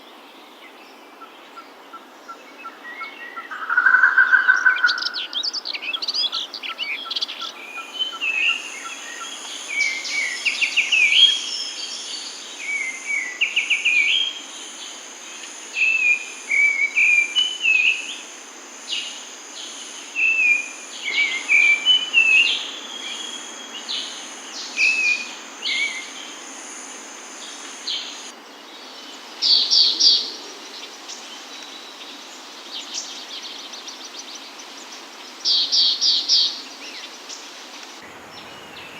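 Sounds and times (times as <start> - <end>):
birds chirping: 38.0 - 38.9.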